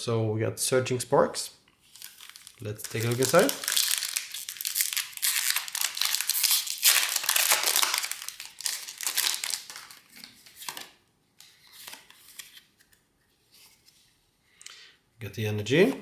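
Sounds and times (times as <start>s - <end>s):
foil wrapper crinkling: 1.8s - 10.9s.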